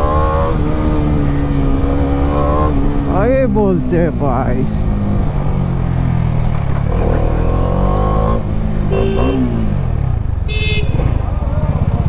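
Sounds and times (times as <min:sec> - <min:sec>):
motorcycle engine accelerating: 0:00.0 - 0:12.0
vehicle horn beep: 0:08.9 - 0:09.6, 0:10.4 - 0:11.1.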